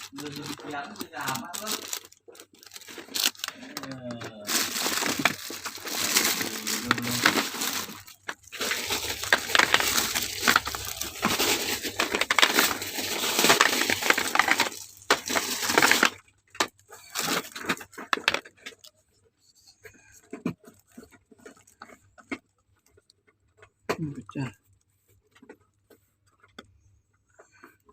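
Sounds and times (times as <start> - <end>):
packaging crinkling and rustling: 0.0 - 18.9, 20.2 - 23.1.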